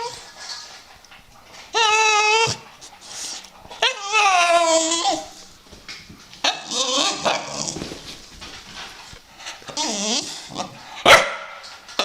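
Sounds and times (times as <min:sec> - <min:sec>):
dog whining howl: 0:01.7 - 0:02.7, 0:03.8 - 0:05.4, 0:06.4 - 0:07.8, 0:09.7 - 0:10.8
dog yowling: 0:01.7 - 0:02.7, 0:03.8 - 0:05.4, 0:06.4 - 0:07.8, 0:09.7 - 0:10.8.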